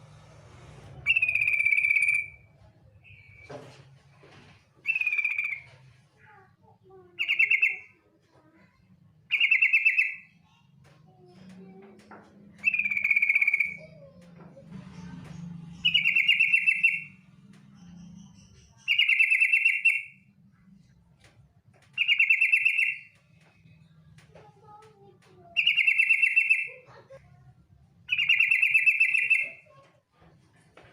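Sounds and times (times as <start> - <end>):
bird chattering trill: 15.8 - 17.1, 18.8 - 20.2, 22.0 - 23.1, 25.4 - 27.2, 28.1 - 29.8.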